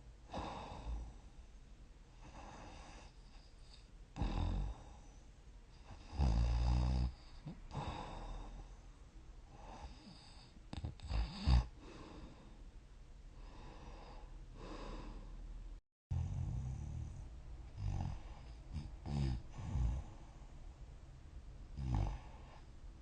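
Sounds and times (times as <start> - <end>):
person snoring: 6.0 - 8.7, 9.6 - 12.4, 16.1 - 17.2, 17.8 - 20.3, 21.8 - 22.6
soft breathing: 7.1 - 10.9, 11.7 - 12.7, 13.3 - 15.6, 16.2 - 21.0, 22.0 - 23.0.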